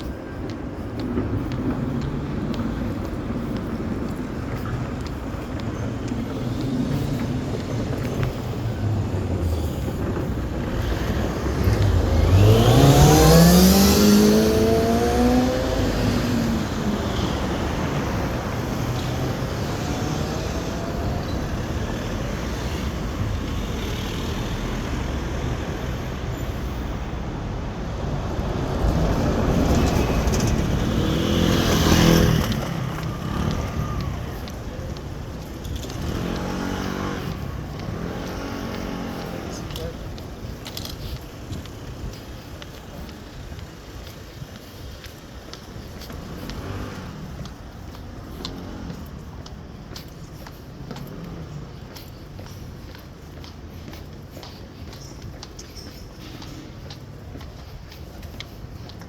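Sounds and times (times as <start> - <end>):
vehicle low rumble: 0.0 - 59.0
vehicle passing: 0.0 - 59.0
engine speeding up: 10.0 - 22.8, 28.8 - 34.4, 35.7 - 39.8.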